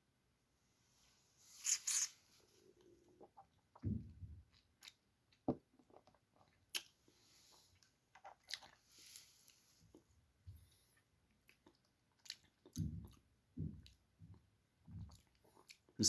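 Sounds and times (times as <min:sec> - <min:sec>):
soft low thump: 0:03.8 - 0:04.5, 0:12.8 - 0:15.2
wet mouth clicks and smacks: 0:05.8 - 0:07.0.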